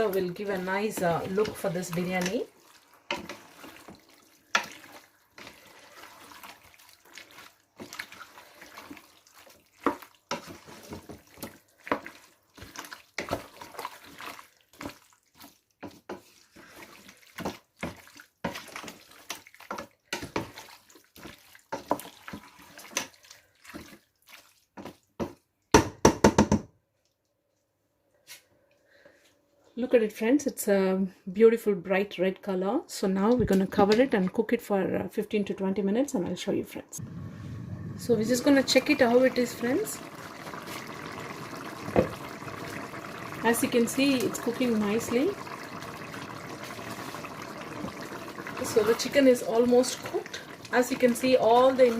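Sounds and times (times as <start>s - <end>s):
spoon stirring food in a pot: 0.0s - 25.5s, 38.3s - 51.9s.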